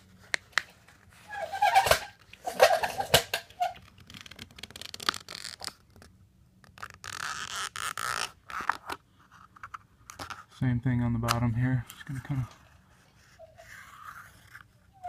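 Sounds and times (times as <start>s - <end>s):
blade scraping vinyl film: 1.3s - 9.0s.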